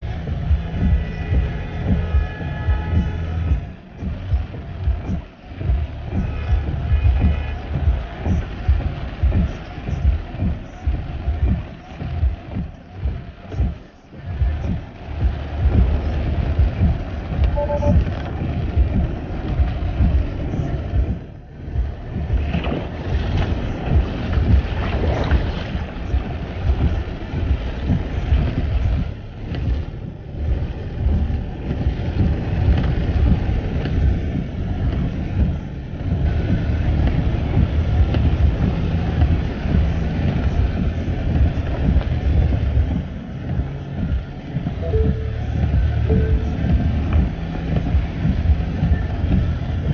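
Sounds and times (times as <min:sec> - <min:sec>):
water churning against car: 0:00.0 - 0:49.9
dashboard alert chime: 0:17.6 - 0:18.0, 0:44.8 - 0:45.4.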